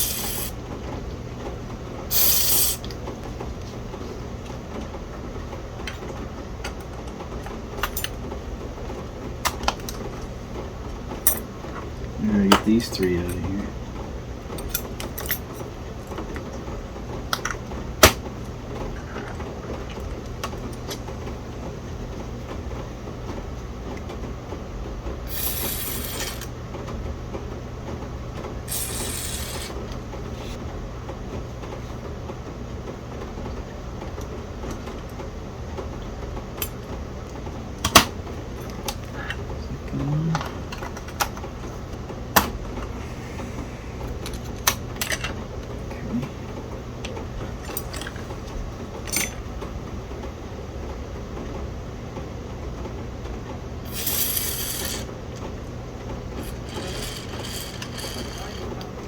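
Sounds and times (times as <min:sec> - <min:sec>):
aerosol spray hissing: 0:00.0 - 0:00.6, 0:02.1 - 0:02.8, 0:28.7 - 0:29.8
steady low hum: 0:00.0 - 0:59.0.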